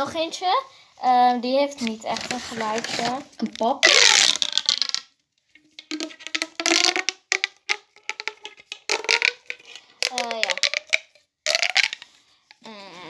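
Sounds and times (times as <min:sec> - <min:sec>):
plastic fidget toys clicking: 0:01.8 - 0:05.1, 0:05.8 - 0:12.6.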